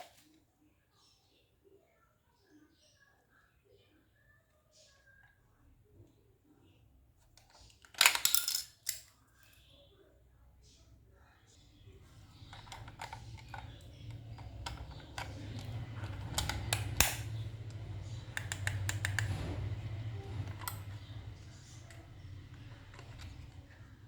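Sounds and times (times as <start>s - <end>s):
low hum: 11.6s - 24.0s
hard plastic clicking: 11.9s - 24.0s.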